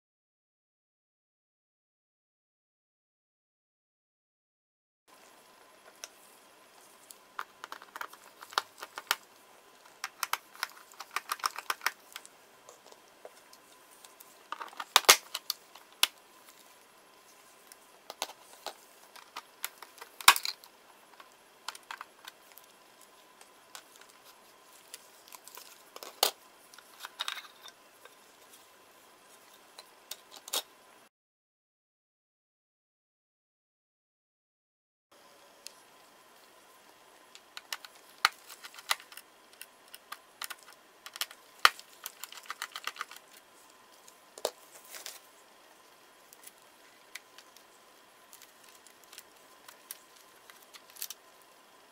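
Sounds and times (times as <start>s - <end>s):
laptop plastic parts clicking: 7.4s - 13.0s, 14.0s - 16.2s, 18.1s - 22.8s, 37.4s - 43.5s, 48.3s - 51.2s.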